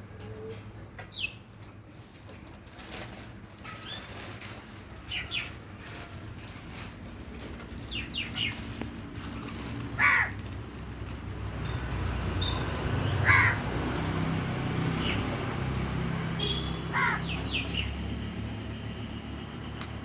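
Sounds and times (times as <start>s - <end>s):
birds giving harsh calls: 7.8s - 10.7s, 12.4s - 13.9s, 16.4s - 18.2s.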